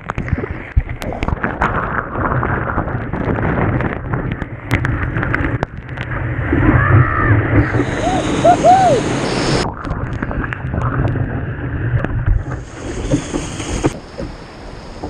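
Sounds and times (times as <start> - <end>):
wind buffeting microphone: 1.0 - 15.0
surf rushing: 4.7 - 15.0.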